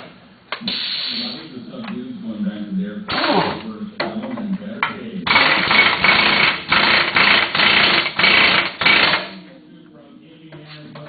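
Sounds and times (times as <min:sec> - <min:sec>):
impact wrench hammering: 0:03.1 - 0:04.1, 0:05.3 - 0:09.4.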